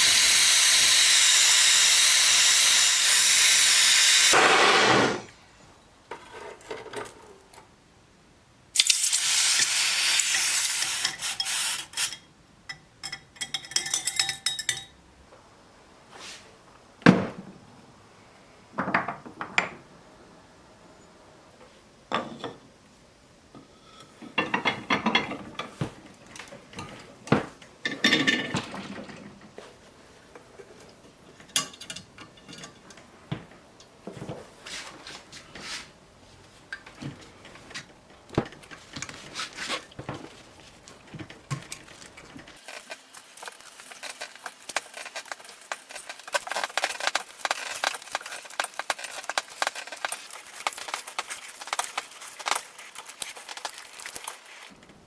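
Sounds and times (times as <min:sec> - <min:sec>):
metal tools clinking: 0:41.7 - 0:54.6.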